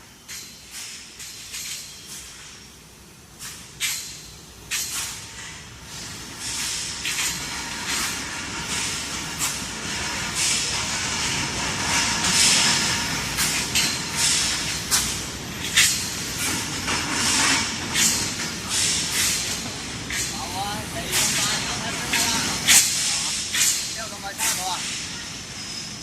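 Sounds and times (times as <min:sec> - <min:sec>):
sharp hisses: 0:12.1 - 0:26.0.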